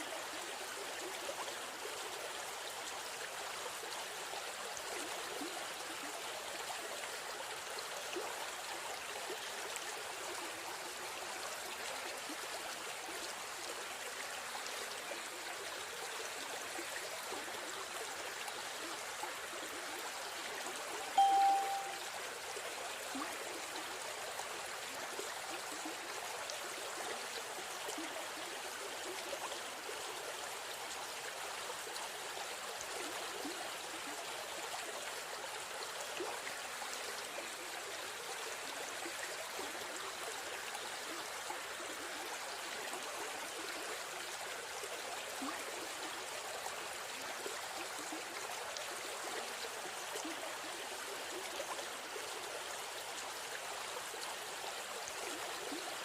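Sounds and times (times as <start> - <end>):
stream flowing over stones: 0.0 - 56.0.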